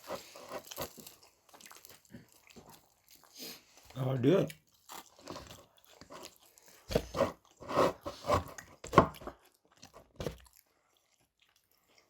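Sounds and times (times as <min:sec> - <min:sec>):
person chewing crispy food: 0:00.0 - 0:07.6, 0:08.6 - 0:12.0.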